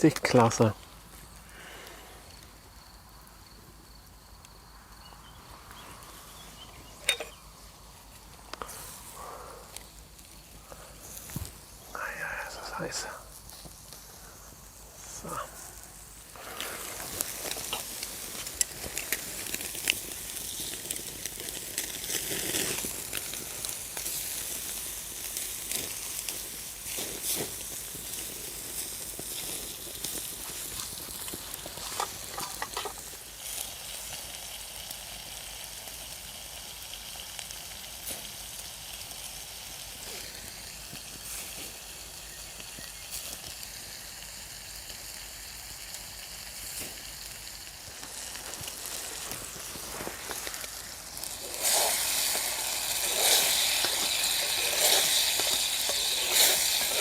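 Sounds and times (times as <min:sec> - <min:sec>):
meat sizzling in a pan: 0:05.4 - 0:57.0
clicks and crackles: 0:05.6 - 0:07.4, 0:08.1 - 0:34.3, 0:45.9 - 0:57.0.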